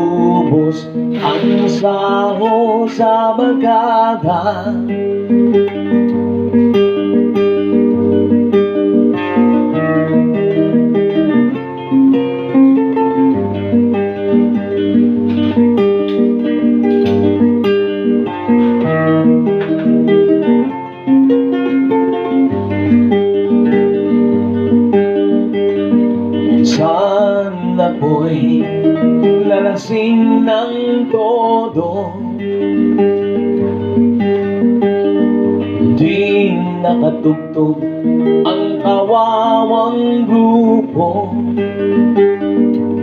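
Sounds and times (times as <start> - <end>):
slow ballad guitar melody: 0.0 - 43.0.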